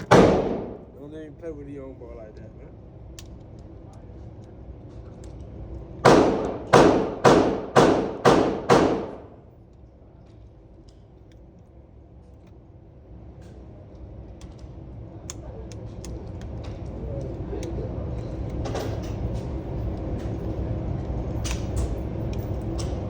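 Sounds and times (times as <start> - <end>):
gunshots with echo: 0.0 - 1.0, 6.0 - 9.4.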